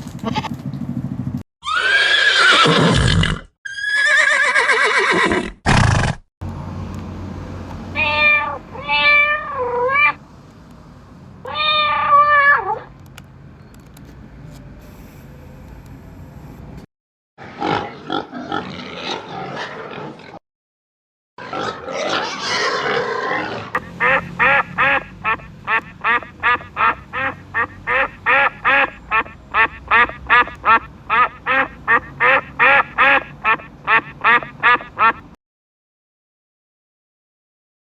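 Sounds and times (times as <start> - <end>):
duck quacking: 23.5 - 35.4.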